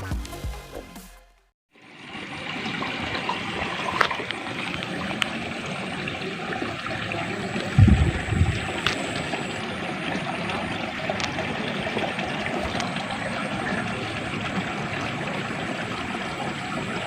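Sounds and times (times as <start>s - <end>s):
water trickling: 1.8s - 17.0s
low loud thumps: 7.8s - 9.0s.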